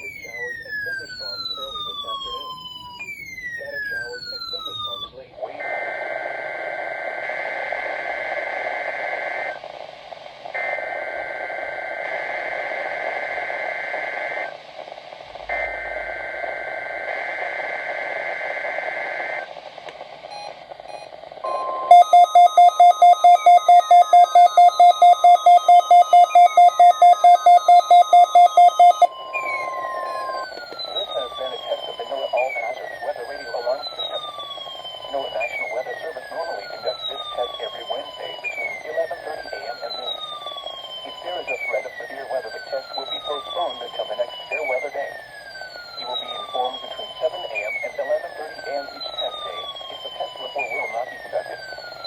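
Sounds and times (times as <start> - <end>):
radio hiss: 0.0 - 2.9, 3.6 - 52.0
rapid beeping: 0.0 - 5.1, 20.1 - 52.0
warbling digital data tones: 20.3 - 34.3.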